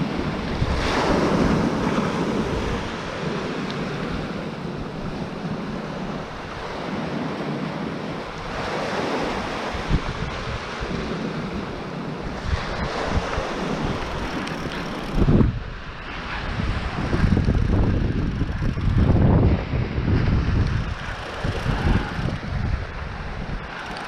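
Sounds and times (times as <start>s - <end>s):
surf washing onto beach: 0.0s - 24.0s
wind buffeting microphone: 0.0s - 24.0s.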